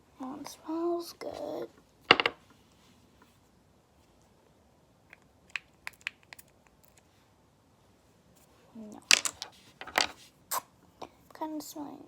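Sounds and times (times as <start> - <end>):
perfume bottles clicking: 9.1 - 10.1.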